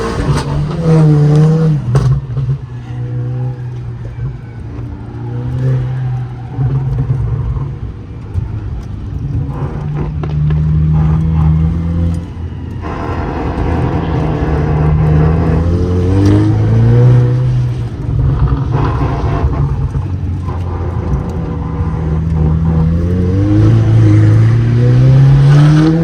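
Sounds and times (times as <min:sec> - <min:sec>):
car engine revving hard: 0:00.0 - 0:26.0.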